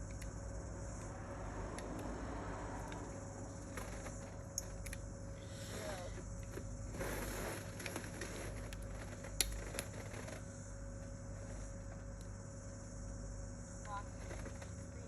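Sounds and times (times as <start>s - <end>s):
sharp clicks: 0.0s - 0.4s
steady low hum: 0.0s - 15.0s.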